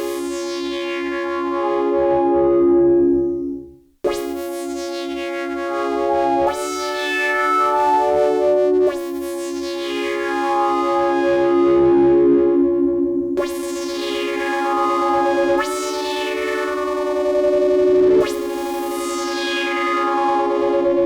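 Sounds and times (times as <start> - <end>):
synthesizer sustained chords: 10.6 - 18.8.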